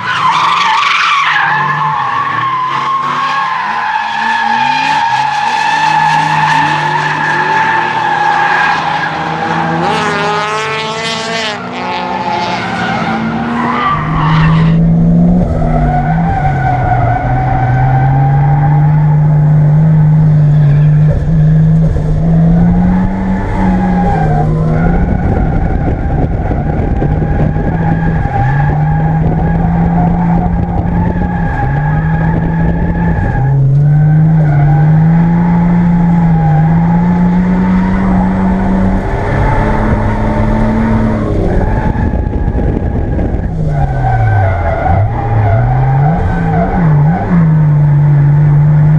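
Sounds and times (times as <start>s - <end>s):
car engine revving: 0.0s - 48.9s
heavy low rumble: 14.0s - 44.0s.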